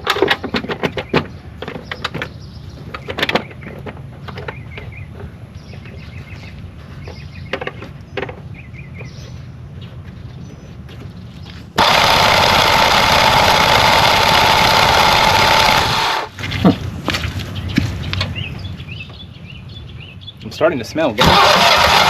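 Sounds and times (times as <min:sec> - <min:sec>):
engine starter cranking: 0:11.8 - 0:16.4, 0:21.2 - 0:22.0.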